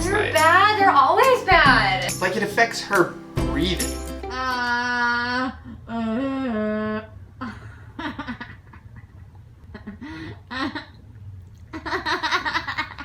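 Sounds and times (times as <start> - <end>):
held pitched note: 0.0 - 4.9.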